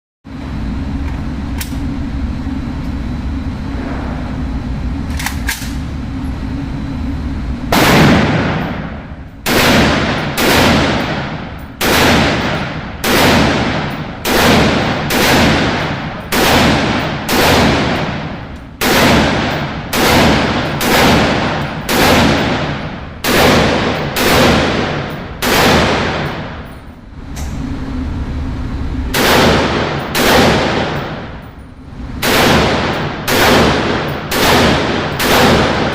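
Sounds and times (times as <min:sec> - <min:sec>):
low rumble: 0:00.3 - 0:35.9
gunshots ringing out: 0:07.7 - 0:26.8, 0:29.1 - 0:31.4, 0:32.2 - 0:35.9.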